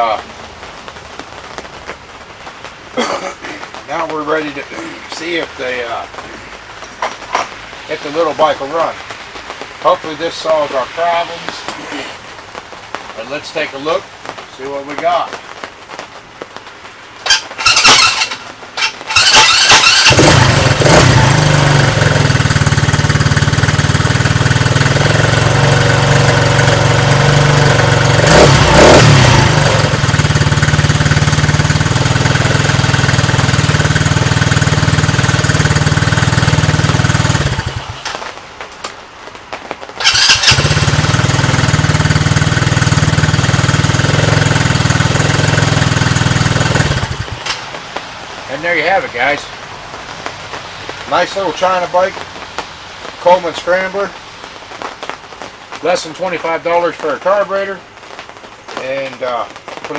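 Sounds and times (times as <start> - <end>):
small engine cranking and running: 17.2 - 38.2, 40.0 - 47.8
engine revving: 17.3 - 38.3, 40.0 - 47.8.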